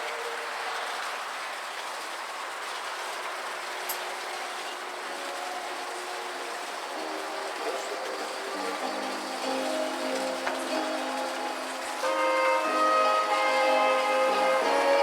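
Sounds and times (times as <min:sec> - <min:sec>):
rushing outdoor background noise: 0:00.0 - 0:15.0
soft music with held notes: 0:05.1 - 0:15.0.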